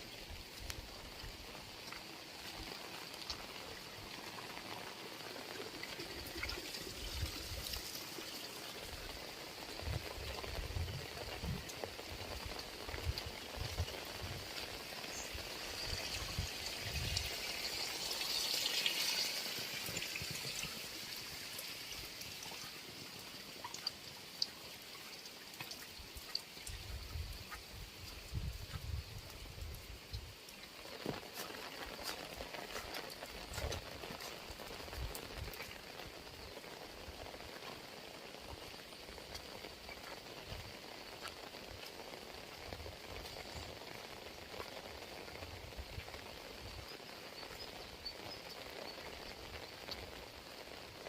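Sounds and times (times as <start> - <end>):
heavy rain falling: 0.0 - 51.0
water pouring and trickling: 0.0 - 51.0.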